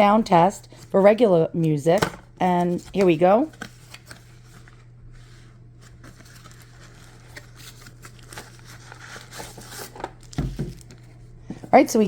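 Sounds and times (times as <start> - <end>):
cardboard and paper rustling: 2.4 - 11.8.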